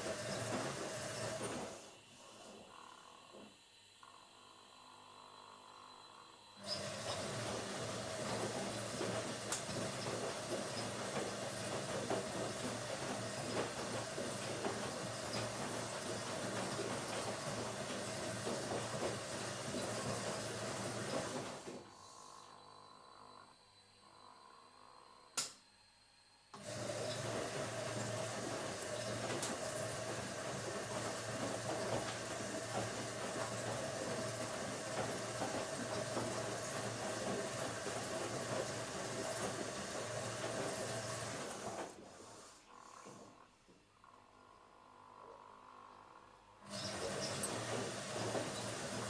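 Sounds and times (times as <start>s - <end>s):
washing machine running: 0.0s - 3.8s, 4.5s - 23.4s, 26.6s - 43.7s, 45.1s - 49.0s.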